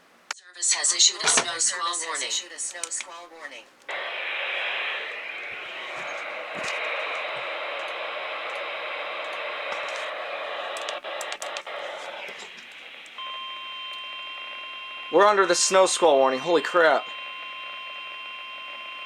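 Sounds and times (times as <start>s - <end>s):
sharp clicks: 3.8s - 13.2s
radio static hiss: 3.9s - 19.0s.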